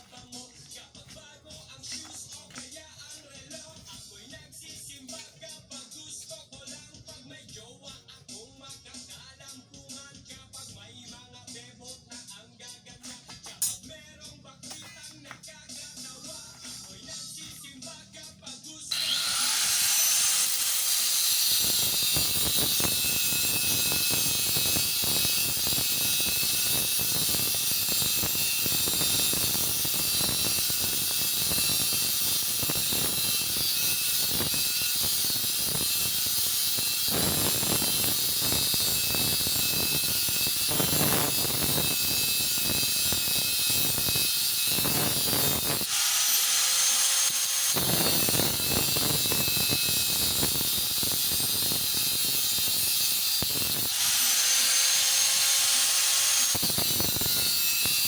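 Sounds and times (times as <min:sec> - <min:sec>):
electric grinder cutting steel: 0:18.9 - 0:58.0.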